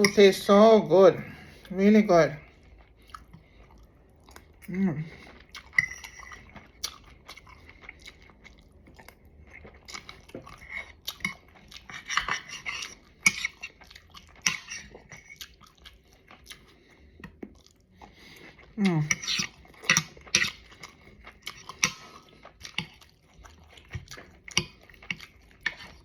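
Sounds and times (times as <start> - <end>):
person chewing food: 0.0 - 0.4, 1.2 - 26.0
cutlery clicking and scraping on plate: 12.0 - 13.6.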